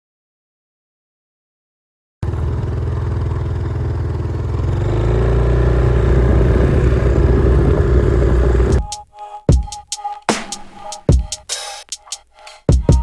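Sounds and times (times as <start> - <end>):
air compressor pulsing: 2.2 - 8.8.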